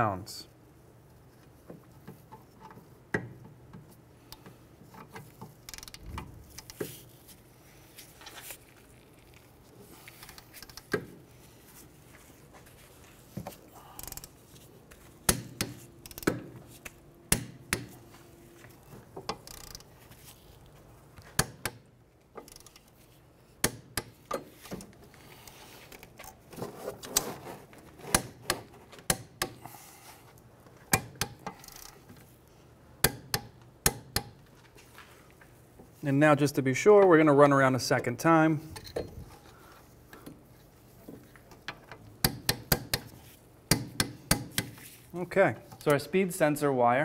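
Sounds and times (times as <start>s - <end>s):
torque wrench ratcheting: 5.6s - 6.8s, 13.9s - 14.4s, 16.0s - 16.4s, 19.3s - 19.9s, 22.4s - 22.9s, 31.2s - 32.0s.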